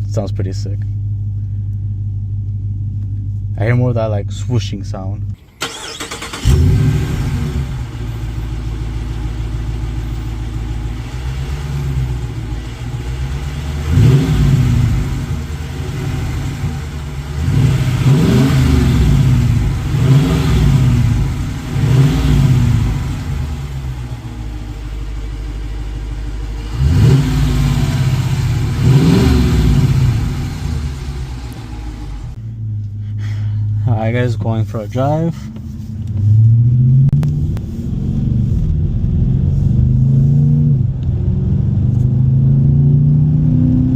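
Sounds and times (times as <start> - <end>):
car engine idling and revving: 0.0 - 43.9
swooshing engine intake: 10.5 - 32.4, 34.7 - 40.4.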